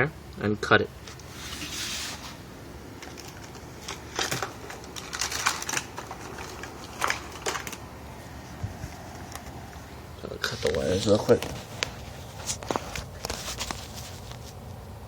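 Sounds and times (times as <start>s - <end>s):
rustling: 1.0s - 14.8s
wire and tools clicking: 3.0s - 7.9s.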